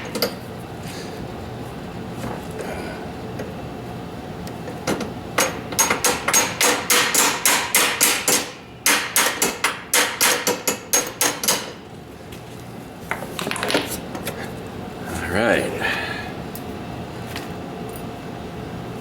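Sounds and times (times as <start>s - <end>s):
hammer striking metal pin: 5.4s - 11.8s.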